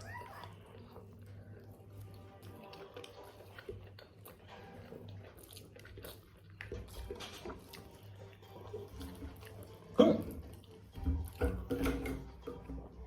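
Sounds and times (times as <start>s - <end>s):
chewing and mouth smacks: 0.0s - 13.0s.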